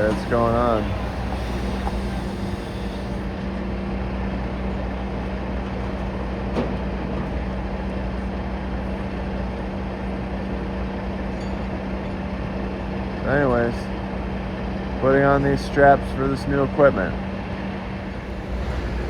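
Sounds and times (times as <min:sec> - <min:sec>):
diesel engine running: 0:00.0 - 0:06.4, 0:17.6 - 0:19.0.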